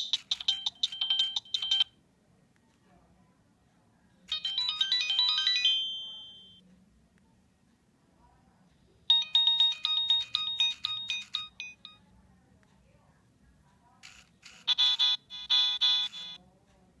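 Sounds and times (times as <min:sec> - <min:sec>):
mobile phone beeping ringtone: 0:00.0 - 0:01.9, 0:04.3 - 0:06.6, 0:09.1 - 0:12.1, 0:14.7 - 0:16.4.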